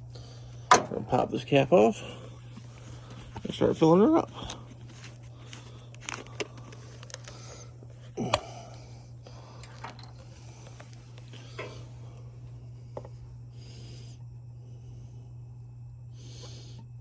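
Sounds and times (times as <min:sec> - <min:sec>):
steady low hum: 0:00.0 - 0:17.0
oil filler cap popping off: 0:00.7 - 0:01.2.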